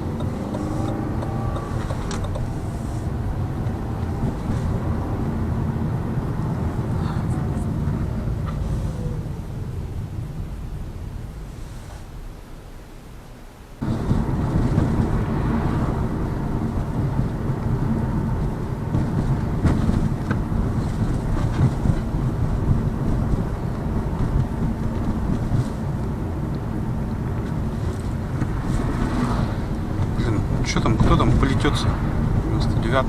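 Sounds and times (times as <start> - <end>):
suspension knocks over bumps: 0.0 - 5.5, 13.8 - 33.0
road and tyre noise in car: 0.0 - 33.0.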